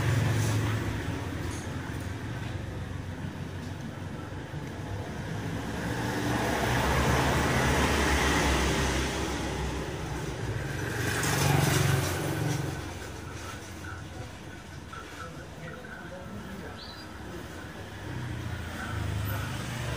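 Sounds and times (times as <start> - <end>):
scooter engine revving: 5.1 - 13.2.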